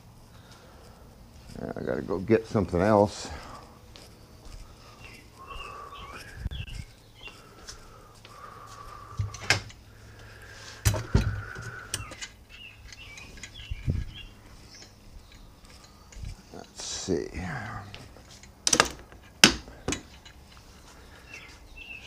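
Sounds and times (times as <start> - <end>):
birds chirping: 0.0 - 22.0
knocks and thumps: 10.8 - 11.8.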